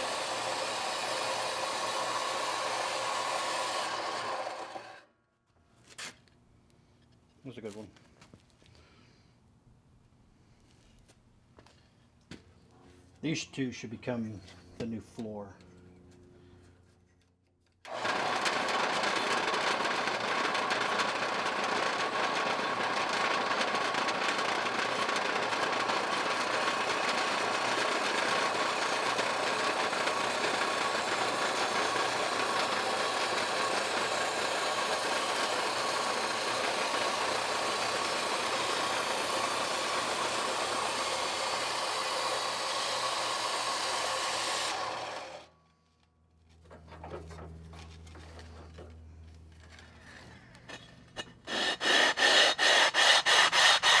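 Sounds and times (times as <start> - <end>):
power saw whining: 0.0 - 5.1, 17.8 - 45.6, 49.6 - 54.0.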